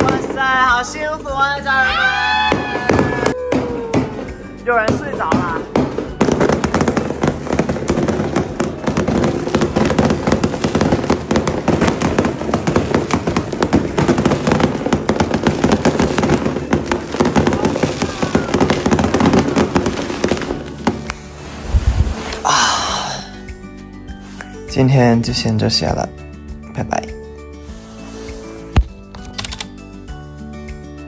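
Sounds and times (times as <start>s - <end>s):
firecrackers popping: 0.0s - 1.5s, 2.3s - 26.1s, 26.8s - 29.6s
people's voices: 17.1s - 20.6s.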